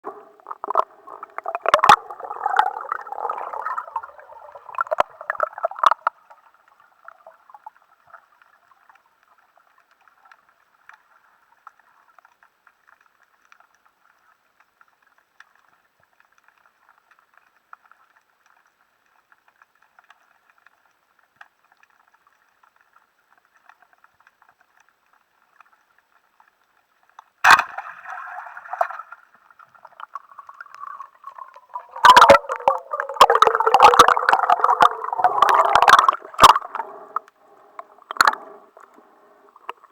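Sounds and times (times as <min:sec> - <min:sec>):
underwater gurgling and bubbling: 0:00.0 - 0:06.3, 0:27.8 - 0:39.9
faint crackle: 0:00.0 - 0:39.9.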